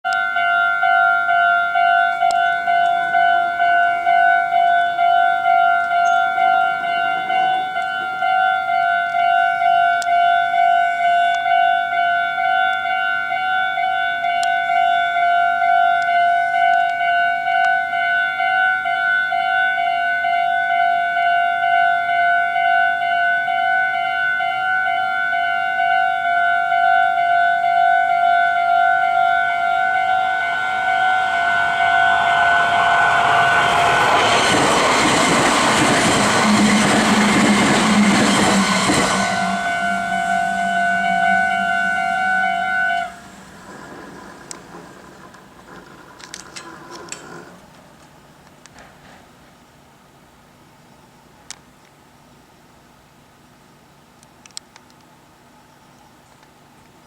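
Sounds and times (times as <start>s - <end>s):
level crossing warning bell: 0.0s - 43.7s.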